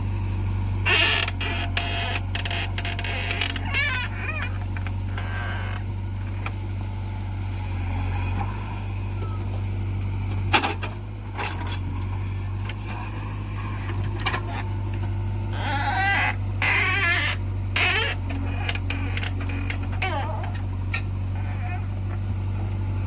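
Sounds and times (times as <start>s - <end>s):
diesel machinery droning: 0.0s - 23.0s
bleating animal call: 0.8s - 5.9s, 12.8s - 22.2s.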